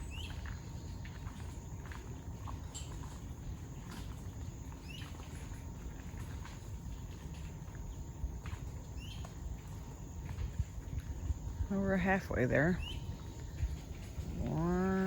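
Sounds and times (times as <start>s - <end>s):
low rumble: 10.2s - 15.0s.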